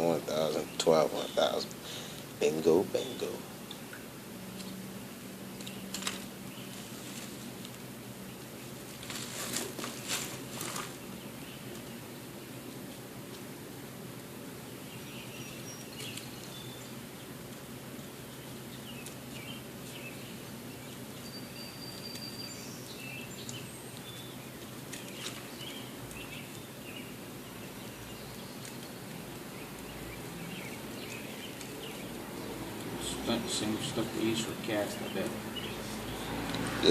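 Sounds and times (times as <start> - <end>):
low background hum: 0.0 - 36.9
bird chirps and whistles: 21.2 - 23.3.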